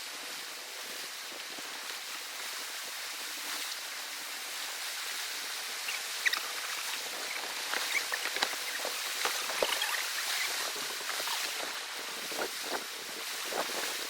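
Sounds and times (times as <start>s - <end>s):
surf washing on shore: 0.0s - 14.0s.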